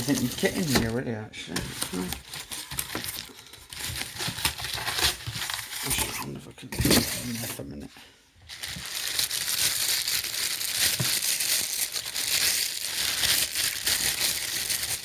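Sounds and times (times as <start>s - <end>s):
plastic bag crinkling: 0.0s - 1.0s, 8.5s - 15.0s.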